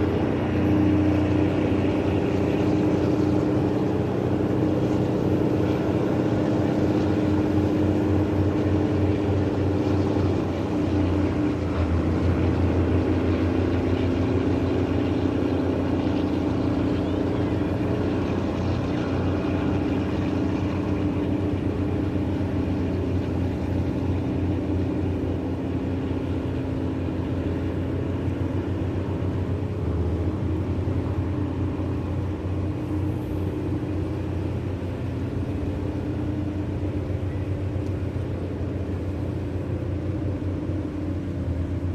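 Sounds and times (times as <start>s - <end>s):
tugboat engine droning: 0.0s - 41.9s.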